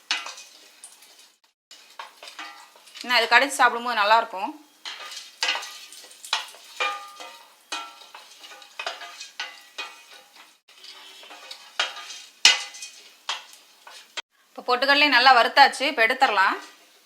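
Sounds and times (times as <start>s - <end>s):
spoon scraping a pan: 0.0s - 3.4s, 4.7s - 14.2s
light sizzle in a pan: 0.0s - 17.0s.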